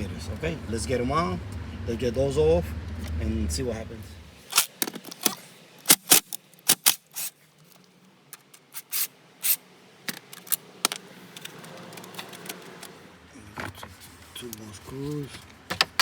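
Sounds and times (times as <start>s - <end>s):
hand tools clicking and scraping: 4.4s - 13.0s.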